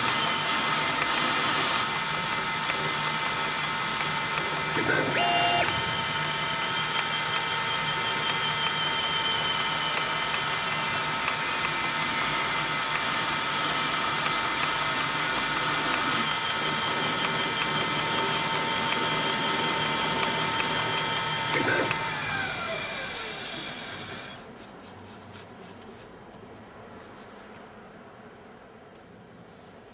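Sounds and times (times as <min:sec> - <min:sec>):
lathe motor humming and whining: 0:00.0 - 0:24.4.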